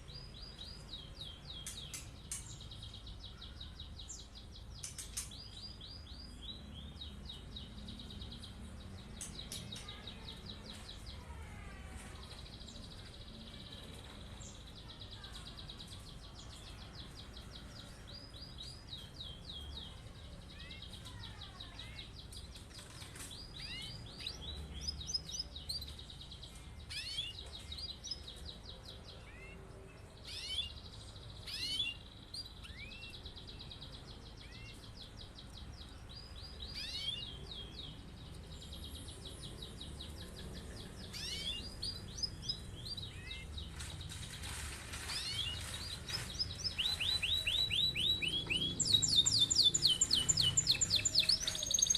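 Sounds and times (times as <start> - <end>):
canary trilling: 30.3 - 30.8, 31.4 - 33.1, 36.7 - 37.4, 40.2 - 43.6, 45.1 - 51.9.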